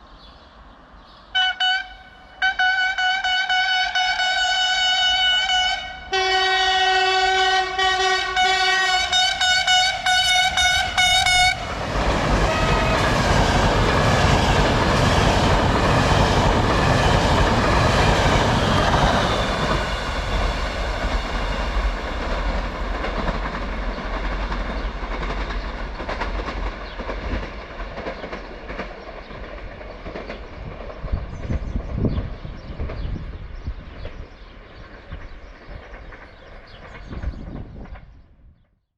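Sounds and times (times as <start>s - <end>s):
train passing at speed: 0.0s - 38.7s
locomotive horn: 1.3s - 11.8s, 12.4s - 13.3s
wheels clacking over rail joints: 9.7s - 31.9s.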